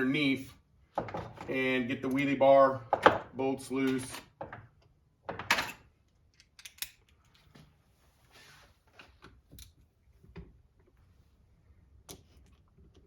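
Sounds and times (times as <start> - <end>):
tools and parts clattering: 5.3 - 7.1.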